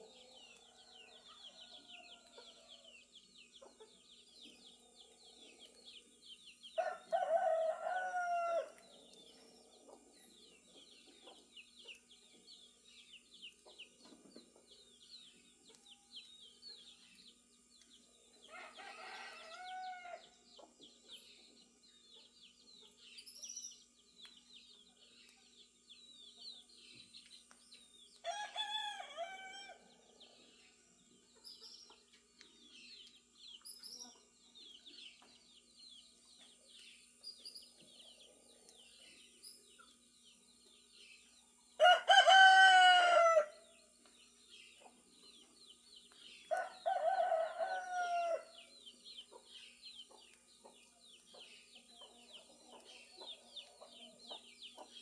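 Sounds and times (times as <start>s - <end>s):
songbirds chirping: 0.0s - 55.0s
rooster crowing: 6.8s - 8.8s, 18.5s - 20.2s, 28.2s - 29.8s, 41.8s - 43.6s, 46.6s - 48.5s.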